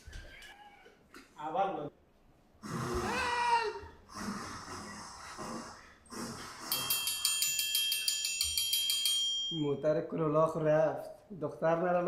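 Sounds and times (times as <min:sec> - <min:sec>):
wavering vocal cry: 0:02.9 - 0:04.1
metallic ticks with ringing tones: 0:06.7 - 0:09.9.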